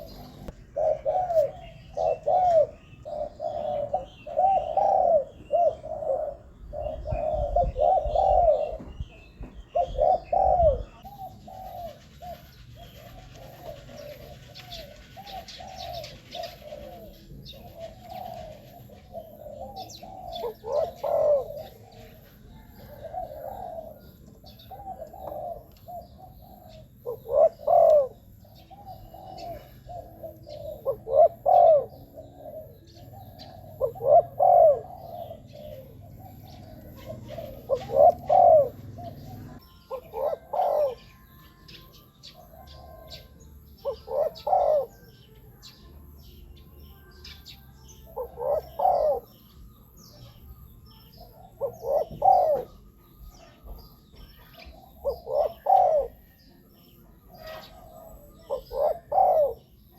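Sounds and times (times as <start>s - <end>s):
dove cooing: 0.0s - 59.9s.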